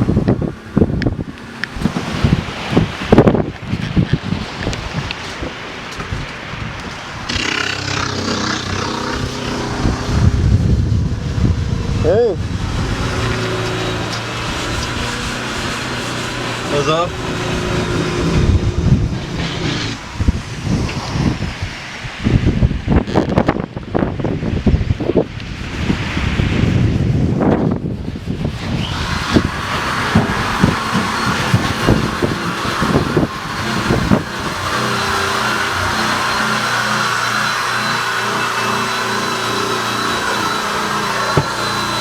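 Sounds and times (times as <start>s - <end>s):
wind buffeting microphone: 0.0s - 42.0s
machine motor humming: 7.2s - 11.0s, 12.6s - 20.0s, 28.8s - 42.0s.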